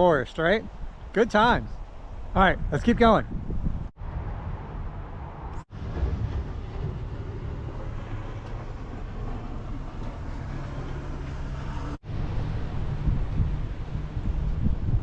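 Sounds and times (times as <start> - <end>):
pickup truck driving rumble: 4.0 - 15.0.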